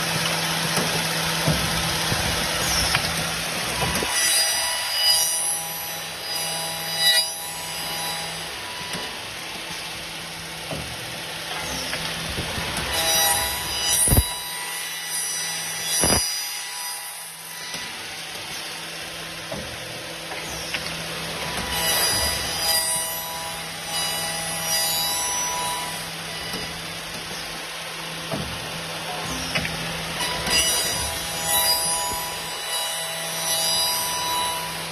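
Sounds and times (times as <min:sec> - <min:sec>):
low motor hum: 0:00.0 - 0:04.1
cutter cutting wood: 0:00.0 - 0:34.9.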